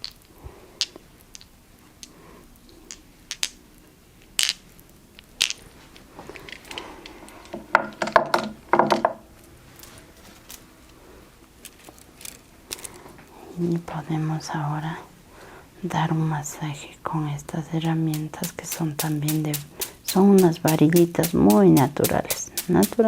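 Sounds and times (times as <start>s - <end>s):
cluster of knocks: 7.6s - 9.2s
crystals clinking together: 17.8s - 23.0s.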